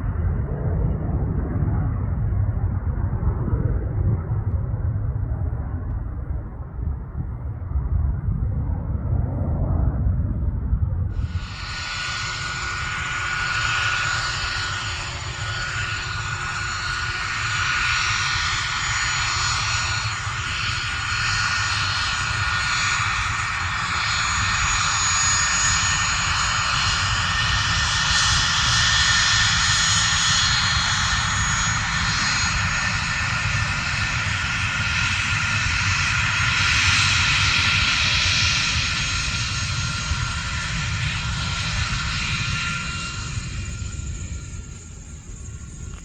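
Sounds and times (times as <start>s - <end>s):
jet engines whining: 11.1s - 46.0s.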